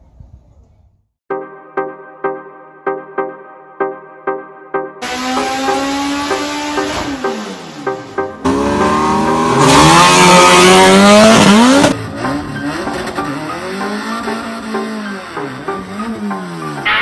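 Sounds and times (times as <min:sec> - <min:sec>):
car engine revving: 0:05.0 - 0:16.8.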